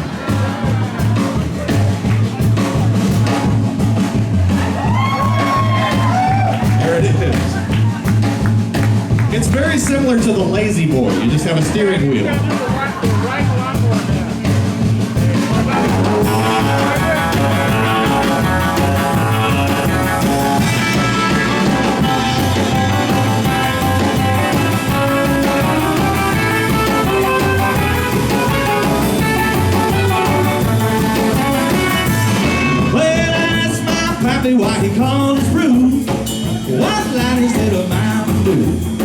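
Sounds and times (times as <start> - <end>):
bass guitar: 0.0 - 39.0
drum kit beat: 0.0 - 39.0
electric guitar: 14.8 - 39.0.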